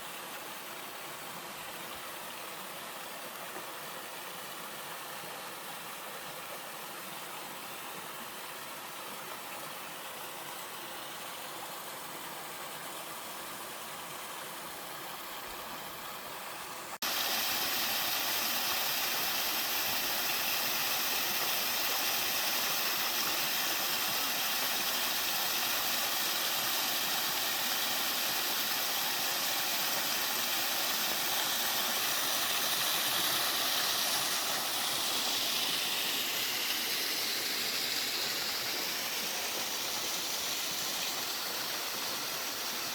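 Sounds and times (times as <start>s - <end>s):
stream water rushing over rocks: 0.0s - 42.9s
waterfall rushing: 17.0s - 42.9s.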